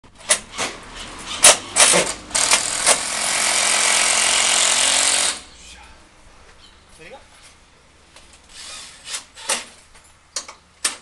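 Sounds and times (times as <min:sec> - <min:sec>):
power tool running: 0:02.3 - 0:05.5.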